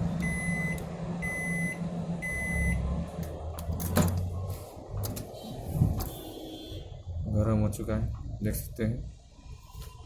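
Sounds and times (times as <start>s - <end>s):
microwave hum: 0.0s - 5.4s
microwave beeping: 0.2s - 2.8s.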